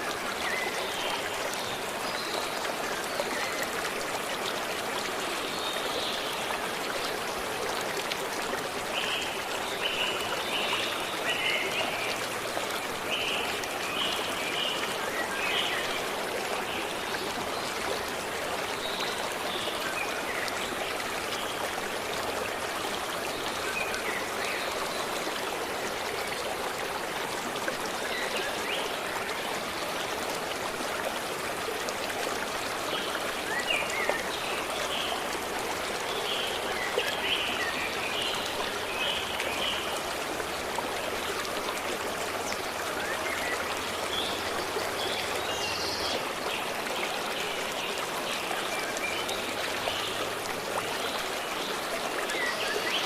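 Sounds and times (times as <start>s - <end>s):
stream flowing and splashing: 0.0s - 53.0s.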